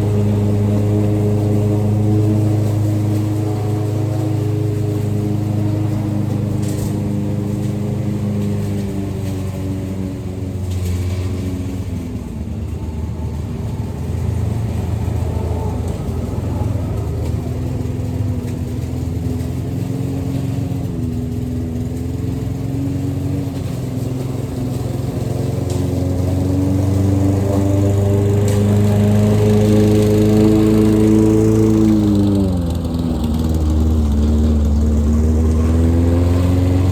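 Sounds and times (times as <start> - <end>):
lawn mower engine running: 0.0 - 36.9.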